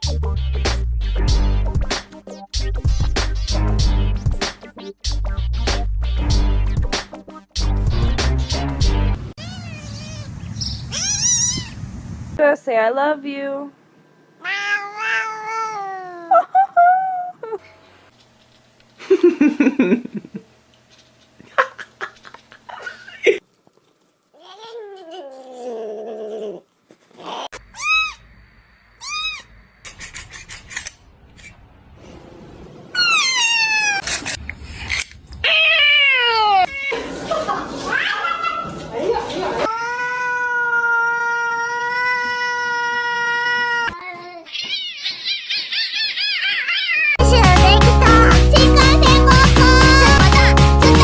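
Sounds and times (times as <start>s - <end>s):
music: 0.0s - 9.3s, 47.2s - 51.0s
cat meowing: 9.4s - 11.8s, 14.4s - 16.3s, 27.3s - 28.2s, 29.0s - 29.5s, 33.0s - 34.1s, 35.4s - 36.9s, 39.7s - 47.2s
cat yowling: 9.4s - 11.8s, 14.4s - 16.5s, 27.2s - 28.2s, 29.0s - 29.5s, 33.0s - 34.2s, 35.4s - 37.0s, 39.6s - 47.2s
quick clicks: 29.8s - 31.6s.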